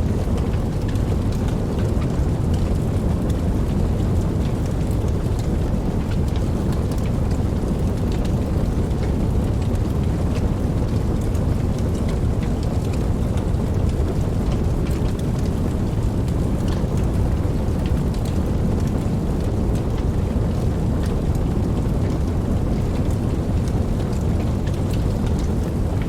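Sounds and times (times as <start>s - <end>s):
raindrops tapping: 0.0s - 26.0s
steady rain: 0.0s - 26.0s.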